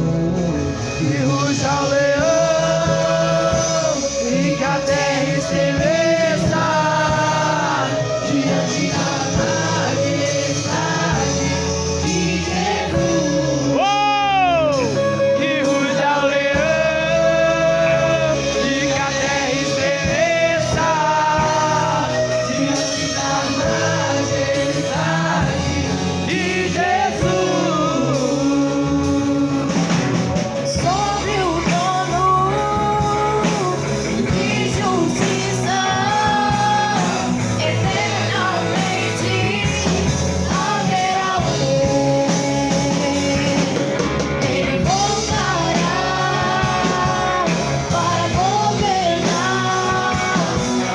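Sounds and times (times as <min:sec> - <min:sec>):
band with guitar: 0:00.0 - 0:50.9
person singing: 0:00.0 - 0:50.9.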